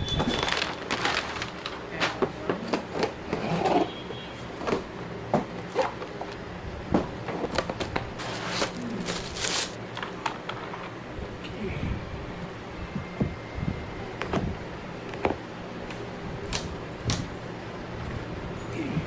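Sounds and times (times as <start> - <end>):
scraping and rustling: 0.1 - 3.9, 7.3 - 10.9.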